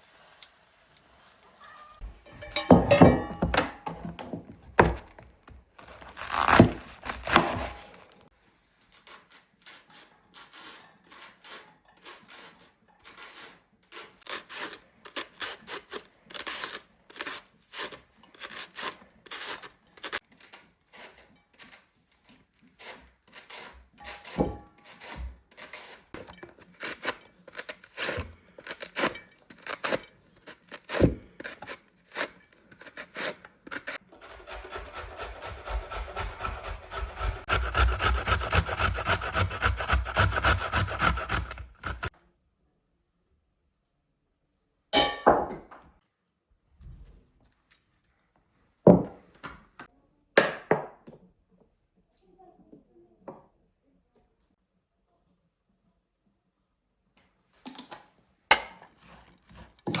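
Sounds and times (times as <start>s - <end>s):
rasping scraping strokes: 8.9s - 42.1s.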